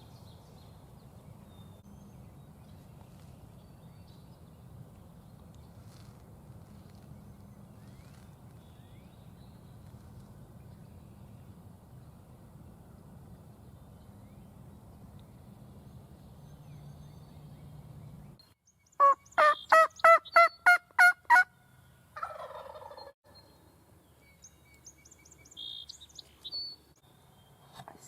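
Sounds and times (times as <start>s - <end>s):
small birds chirping: 0.0s - 11.5s, 13.7s - 20.8s, 21.7s - 28.0s
low outdoor ambience: 0.0s - 28.0s
turkey yelping: 19.0s - 21.5s, 22.2s - 23.1s.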